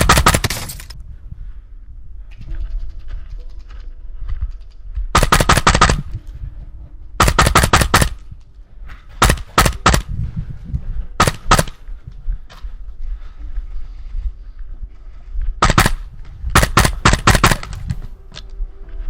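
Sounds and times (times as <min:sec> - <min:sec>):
airsoft rifle firing rapid bursts: 0:00.0 - 0:00.5, 0:05.2 - 0:06.0, 0:07.2 - 0:08.2, 0:09.2 - 0:10.0, 0:15.6 - 0:16.0, 0:16.6 - 0:17.8.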